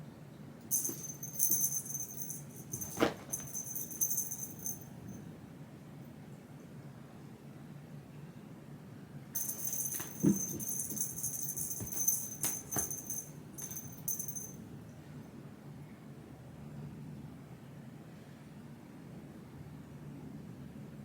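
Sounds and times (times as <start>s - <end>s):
metallic jingling: 0.7s - 5.2s, 9.4s - 14.6s.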